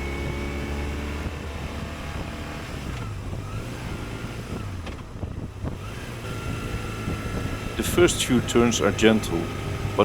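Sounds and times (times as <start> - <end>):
motorcycle engine running: 0.0 - 10.0
wind noise: 0.0 - 10.0.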